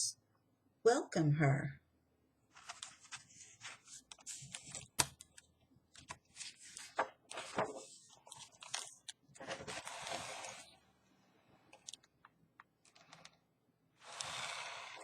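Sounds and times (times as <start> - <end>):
book pages turning and rustling: 2.5 - 10.7.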